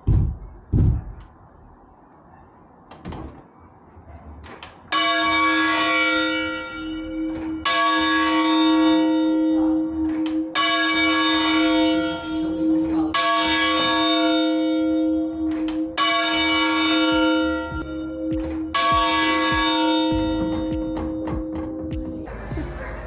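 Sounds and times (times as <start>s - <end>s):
soft knocks: 0.0s - 1.3s
church bell ringing: 4.9s - 23.0s.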